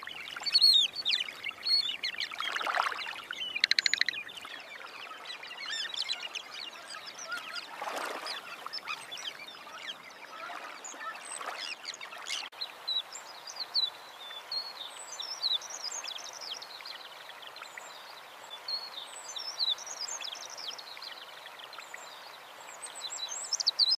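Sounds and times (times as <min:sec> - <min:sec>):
birds chirping and whistling: 0:03.5 - 0:04.2.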